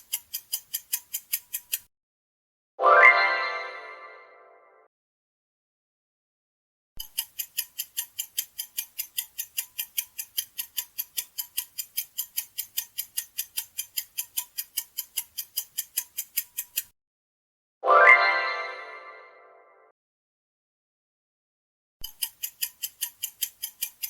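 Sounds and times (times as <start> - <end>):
clock ticks: 0.0 - 1.9, 7.0 - 16.9, 22.0 - 24.0.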